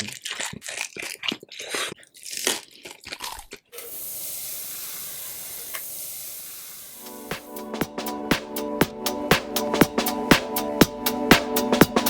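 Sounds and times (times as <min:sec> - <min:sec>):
crunchy chewing: 0:00.0 - 0:03.8
steady hiss: 0:03.8 - 0:07.7.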